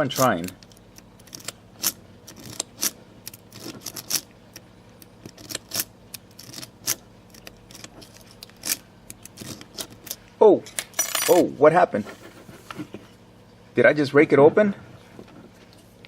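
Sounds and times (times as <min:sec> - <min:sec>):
lock pick clicking and scraping: 0:00.2 - 0:04.6, 0:05.2 - 0:10.2.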